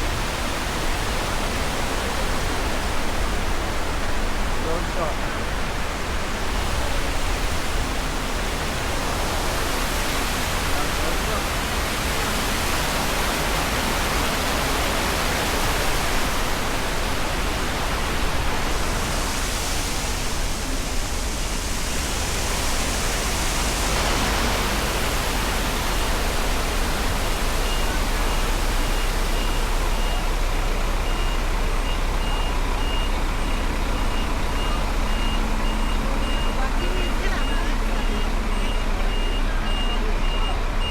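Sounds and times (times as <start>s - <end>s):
vehicle reversing beeper: 27.2s - 40.9s.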